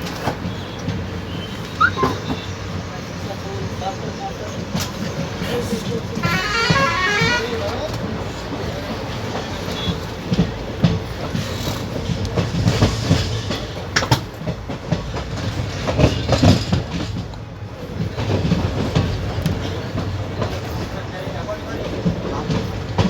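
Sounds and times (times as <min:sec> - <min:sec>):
train rumble: 0:00.0 - 0:23.0
wheels clattering over track: 0:04.7 - 0:23.0.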